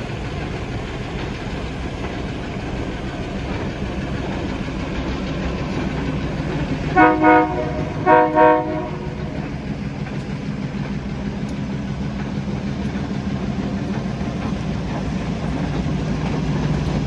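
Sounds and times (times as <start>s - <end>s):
locomotive horn blasts: 6.9s - 9.8s.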